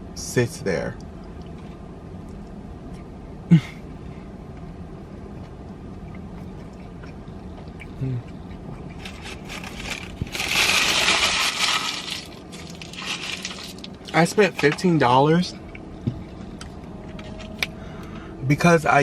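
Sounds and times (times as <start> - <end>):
loud crinkly rustling: 9.0 - 14.0.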